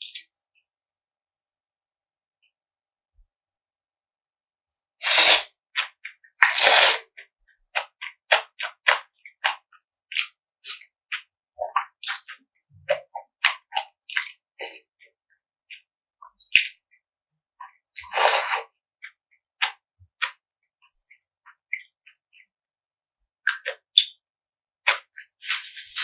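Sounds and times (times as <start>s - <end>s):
wet chewing sounds: 7.8s - 14.9s, 19.6s - 20.4s, 24.9s - 26.0s.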